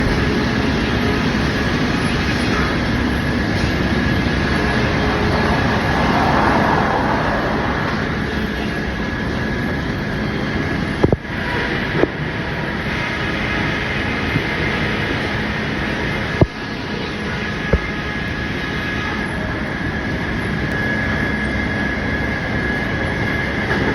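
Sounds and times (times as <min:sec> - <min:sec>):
machinery running: 0:00.0 - 0:17.6
faint steady whine: 0:00.0 - 0:23.8.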